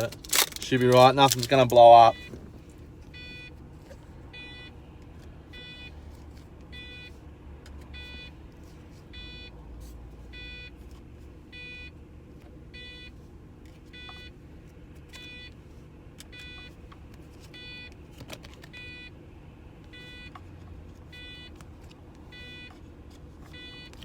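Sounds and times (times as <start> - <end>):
low rumble inside car: 0.0 - 24.0
car warning chime beeping: 0.6 - 2.4, 3.1 - 3.6, 4.3 - 4.8, 5.5 - 6.0, 6.7 - 7.2, 7.9 - 8.4, 9.1 - 9.6, 10.3 - 10.8, 11.5 - 12.0, 12.7 - 13.2, 13.9 - 14.4, 15.2 - 15.6, 16.3 - 16.8, 17.6 - 18.0, 18.7 - 19.2, 19.9 - 20.3, 21.1 - 21.6, 22.3 - 22.8, 23.5 - 24.0.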